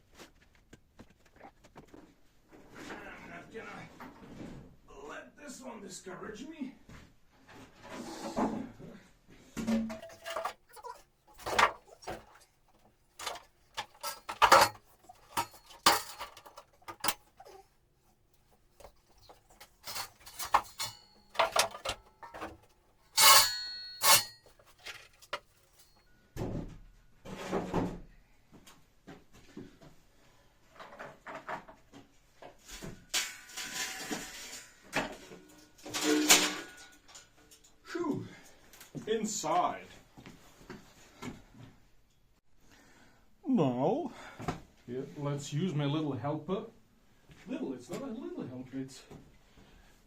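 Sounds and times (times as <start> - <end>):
tools and materials knocking: 9.8 - 12.4, 13.2 - 17.6, 18.8 - 25.9
scraping: 9.9 - 17.7, 18.4 - 26.0
ringing metal clank: 13.2 - 17.6, 19.2 - 26.0.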